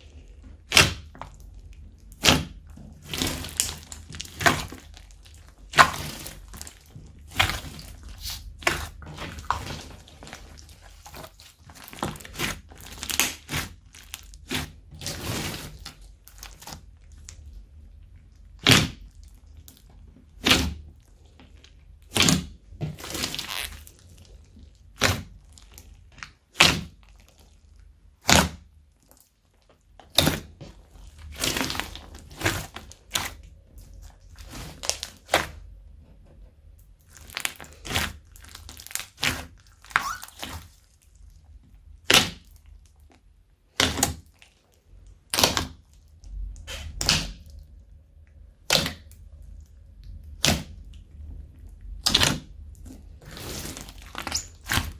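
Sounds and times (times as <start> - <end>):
slime popping and crackling: 0.1 - 17.5, 22.0 - 27.6, 29.9 - 35.6, 37.0 - 41.2, 42.0 - 43.1, 45.3 - 47.6, 48.6 - 49.2, 51.9 - 54.9.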